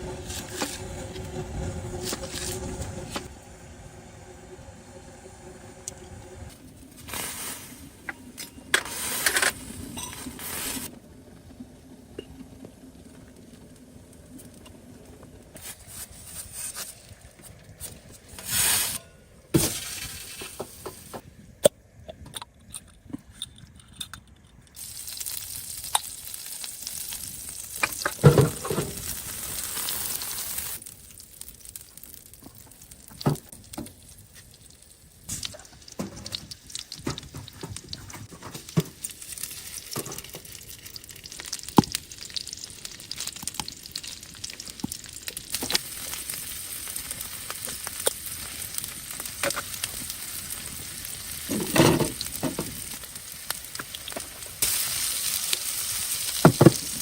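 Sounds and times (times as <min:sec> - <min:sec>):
food sizzling in a pan: 0:06.9 - 0:08.1, 0:24.8 - 0:33.4, 0:38.8 - 0:57.0.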